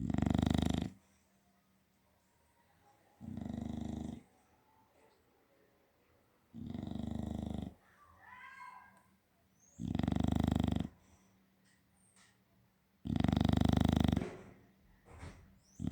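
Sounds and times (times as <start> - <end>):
dog snoring: 0.0 - 1.1, 3.2 - 4.3, 6.5 - 7.8, 9.8 - 11.0, 13.0 - 14.6.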